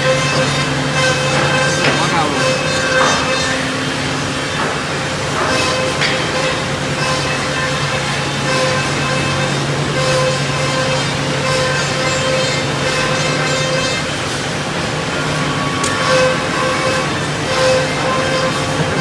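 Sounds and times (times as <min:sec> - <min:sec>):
machine motor hum and whine: 0:00.0 - 0:19.0.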